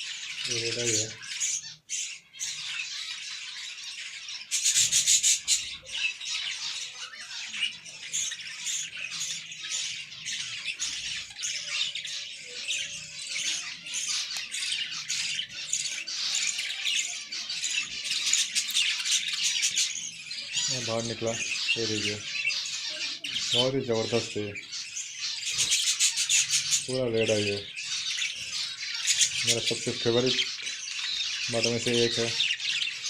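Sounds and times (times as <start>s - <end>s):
budgerigars chattering and chirping: 0.0s - 33.0s.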